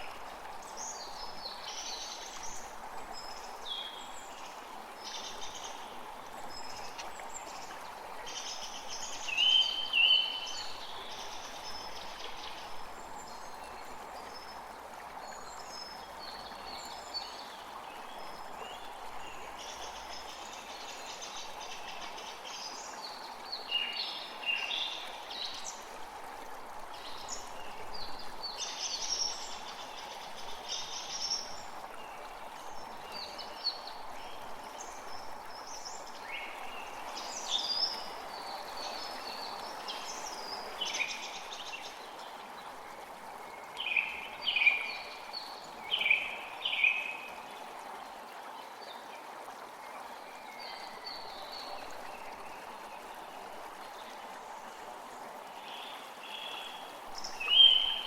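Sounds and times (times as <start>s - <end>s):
creek running: 0.0s - 58.0s
songbirds chirping: 50.0s - 58.0s.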